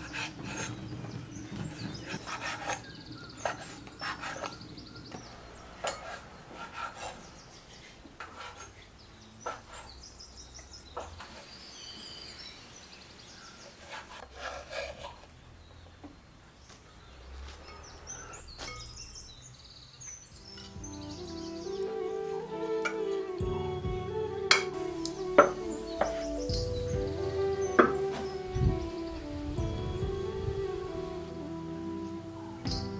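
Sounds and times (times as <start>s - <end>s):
faint bird chirps: 0.0s - 14.1s, 15.4s - 22.4s
scraping and knocking on wood: 0.1s - 8.8s, 27.7s - 28.4s.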